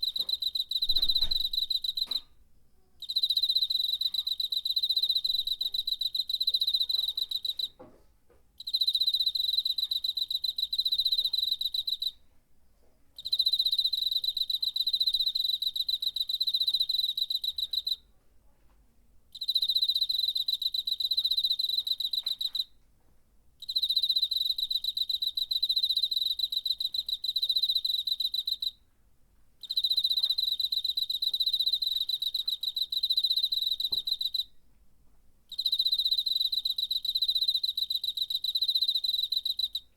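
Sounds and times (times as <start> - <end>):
cricket trilling: 0.0 - 2.2, 3.0 - 7.8, 29.6 - 34.5, 35.5 - 39.8.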